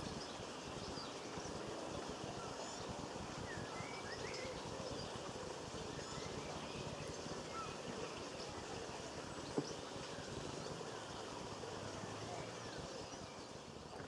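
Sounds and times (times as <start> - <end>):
steady background hiss: 0.0 - 14.0
faint bird chirps: 2.3 - 5.1, 6.0 - 11.3.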